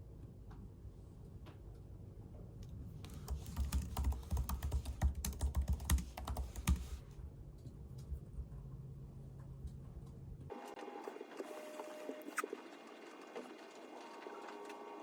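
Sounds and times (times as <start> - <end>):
low steady hum: 0.0 - 10.6.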